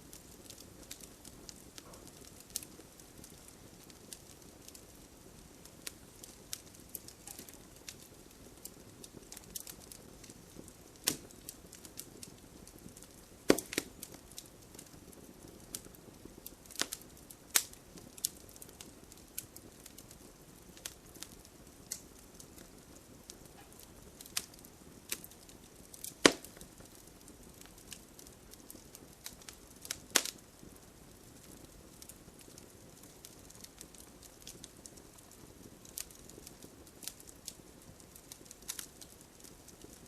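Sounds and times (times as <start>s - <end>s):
campfire crackling: 0.0s - 40.0s
loud sharp pops: 13.5s - 14.1s, 26.1s - 26.6s.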